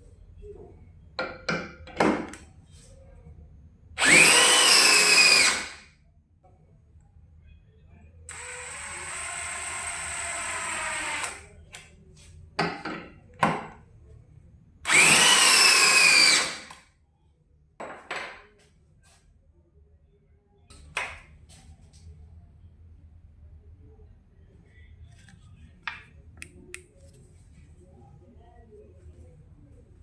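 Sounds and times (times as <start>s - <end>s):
cordless hammer drill running: 4.0s - 5.8s, 8.3s - 11.4s, 14.9s - 16.7s.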